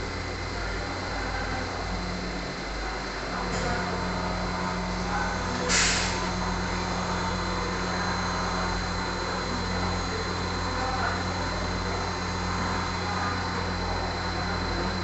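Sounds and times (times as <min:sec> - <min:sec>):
machine humming: 0:00.0 - 0:15.0
short hiss: 0:05.7 - 0:06.2.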